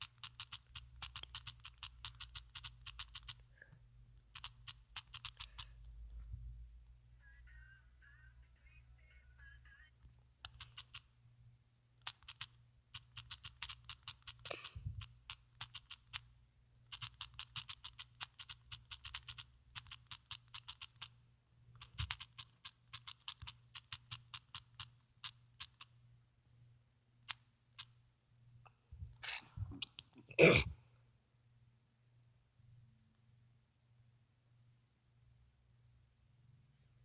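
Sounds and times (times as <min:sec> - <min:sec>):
rapid typing on keyboard: 0:00.0 - 0:03.4, 0:04.2 - 0:05.9, 0:10.4 - 0:11.1, 0:12.0 - 0:16.3, 0:16.9 - 0:21.2, 0:21.8 - 0:25.9, 0:27.3 - 0:27.9.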